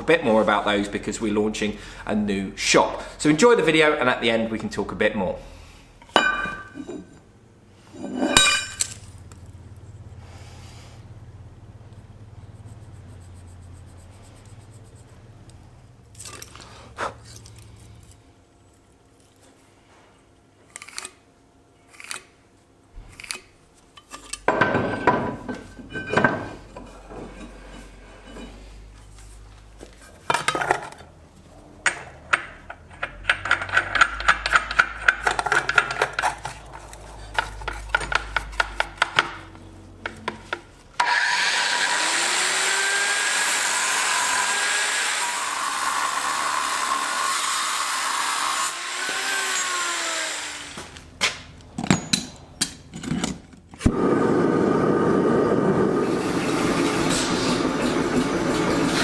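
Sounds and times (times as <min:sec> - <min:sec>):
hammer striking steel: 0:08.4 - 0:09.0
power tool running: 0:41.0 - 0:51.1, 0:53.9 - 0:59.0.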